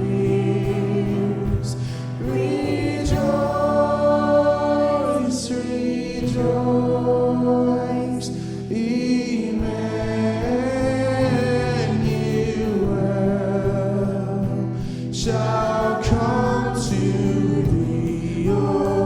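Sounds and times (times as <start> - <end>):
choir singing held notes: 0.0 - 13.6, 15.2 - 19.0.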